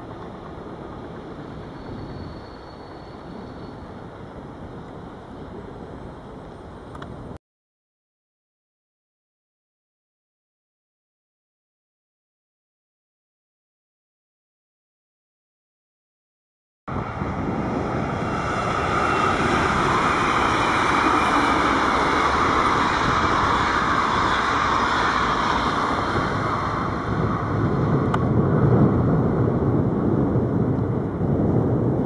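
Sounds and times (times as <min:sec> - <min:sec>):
train rolling on rails: 0:00.0 - 0:07.4, 0:16.9 - 0:32.0.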